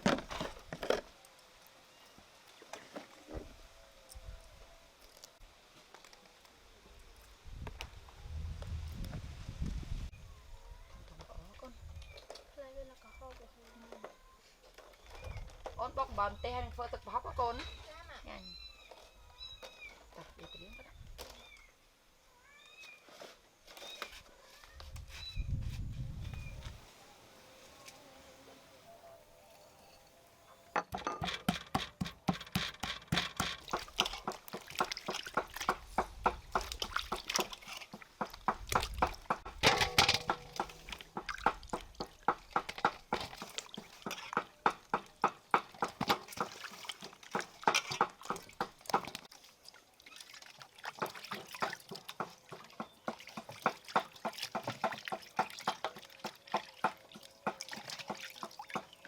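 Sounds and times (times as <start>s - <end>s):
small liquid splashes and clicks: 33.4s - 59.0s.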